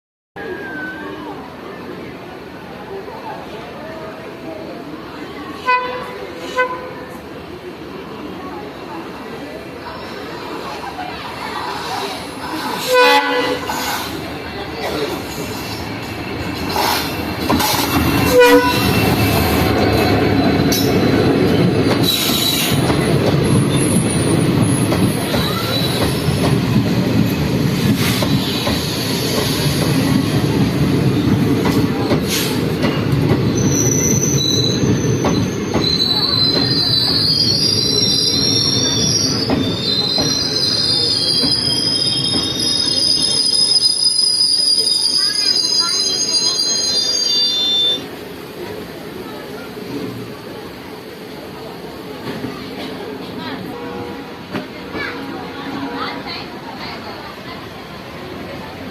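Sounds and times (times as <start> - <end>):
wheels squealing on rails: 0.4 - 2.1, 9.5 - 50.3
train coaches rumbling: 0.4 - 58.9
train horn: 5.6 - 7.0, 12.8 - 13.7, 18.2 - 19.1, 53.7 - 54.5.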